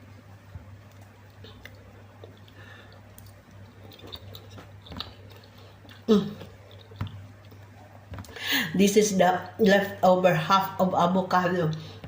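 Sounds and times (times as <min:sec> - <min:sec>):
steady low hum: 0:00.0 - 0:12.0
wet chewing: 0:00.8 - 0:08.4.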